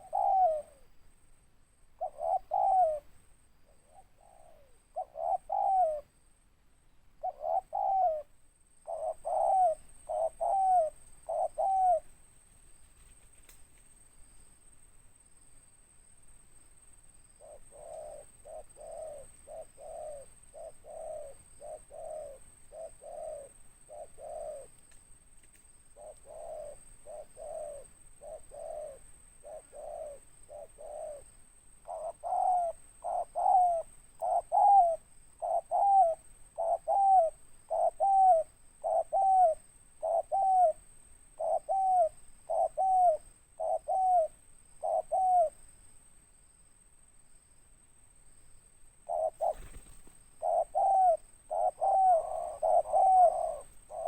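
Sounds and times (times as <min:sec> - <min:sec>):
dove cooing: 0:00.0 - 0:00.9, 0:02.0 - 0:03.1, 0:03.7 - 0:06.1, 0:07.2 - 0:12.1, 0:17.4 - 0:24.8, 0:26.0 - 0:45.6, 0:49.0 - 0:54.0.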